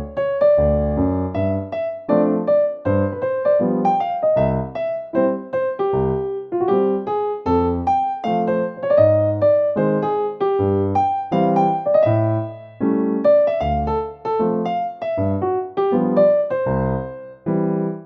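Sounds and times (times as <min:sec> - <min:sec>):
piano melody over bass line: 0:00.0 - 0:18.0.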